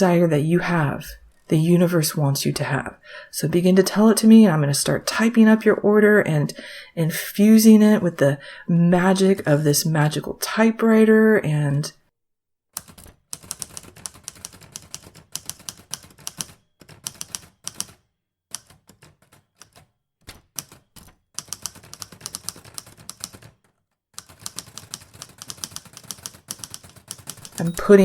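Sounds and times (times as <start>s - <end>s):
typewriter keys clacking: 12.8s - 28.0s.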